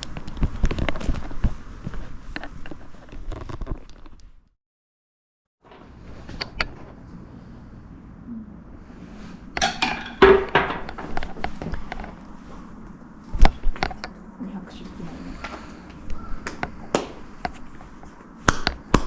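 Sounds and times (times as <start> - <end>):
metallic clinking and jingling: 9.6 - 10.5.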